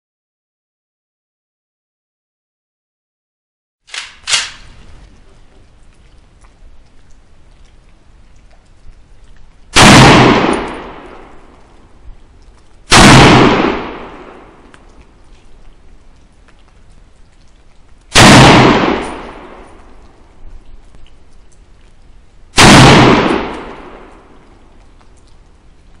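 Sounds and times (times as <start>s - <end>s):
rifle shots: 3.9s - 4.7s, 9.8s - 11.3s, 12.9s - 14.6s, 18.1s - 19.8s, 22.6s - 24.3s
sharp clack: 3.9s - 4.7s.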